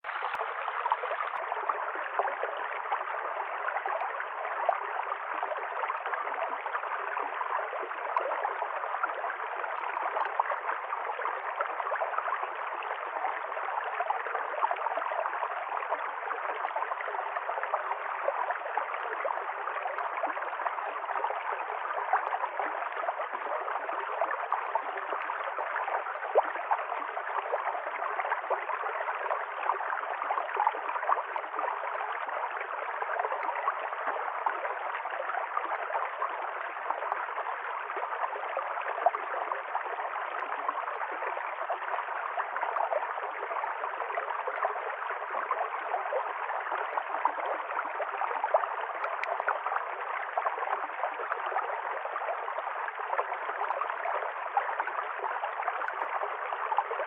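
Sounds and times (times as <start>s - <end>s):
stream flowing over stones: 0.0s - 57.0s.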